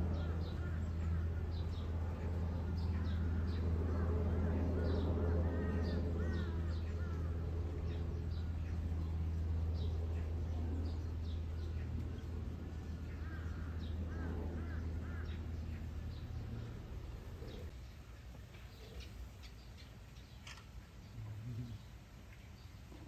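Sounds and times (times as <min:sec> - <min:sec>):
steady low hum: 0:00.0 - 0:23.0
crow cawing: 0:00.2 - 0:01.4, 0:05.4 - 0:07.3, 0:13.1 - 0:15.4.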